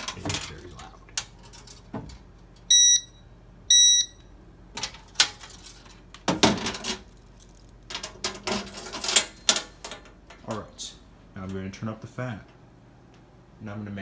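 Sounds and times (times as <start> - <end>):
fire alarm beeps: 2.7 - 4.3.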